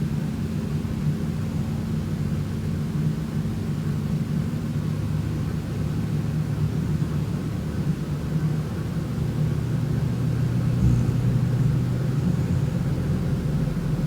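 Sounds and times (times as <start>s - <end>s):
steady low drone: 10.4s - 14.0s.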